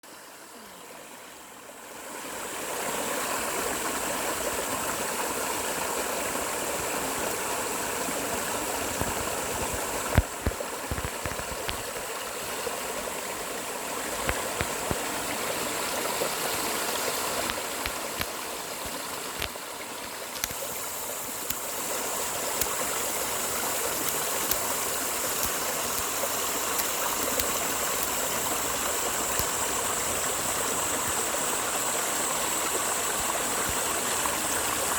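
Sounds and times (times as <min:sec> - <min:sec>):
stream flowing over rocks: 0:00.0 - 0:34.9
small clicks: 0:20.3 - 0:21.7, 0:24.0 - 0:28.4.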